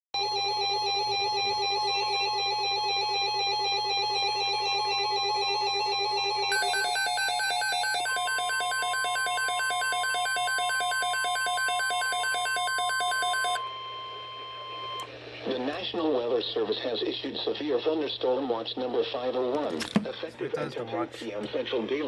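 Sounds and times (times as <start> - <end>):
electronic ringtone-like music: 0.2 - 15.0
steady warning alarm tone: 0.2 - 15.1.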